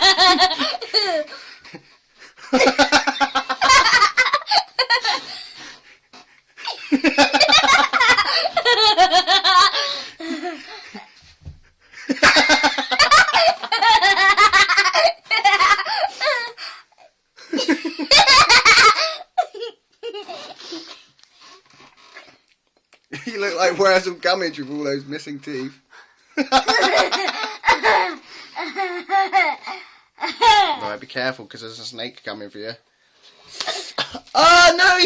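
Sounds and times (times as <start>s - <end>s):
girl giggling: 6.6s - 11.2s, 26.6s - 30.9s.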